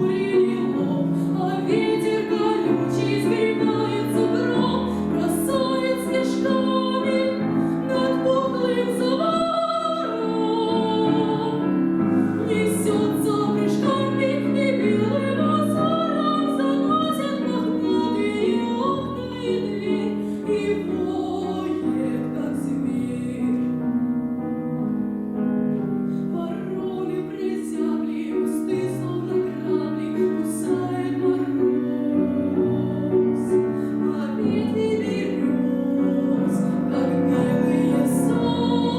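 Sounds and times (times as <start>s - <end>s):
woman singing operatically: 0.0s - 11.6s
piano accompaniment: 0.0s - 38.9s.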